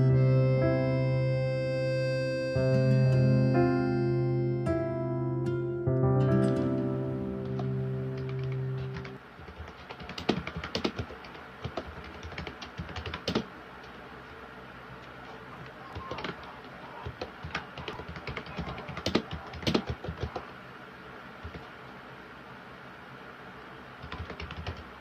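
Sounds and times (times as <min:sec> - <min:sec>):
rapid light clicks and taps: 0:07.5 - 0:14.0, 0:15.0 - 0:20.5, 0:21.4 - 0:22.0, 0:24.0 - 0:24.9.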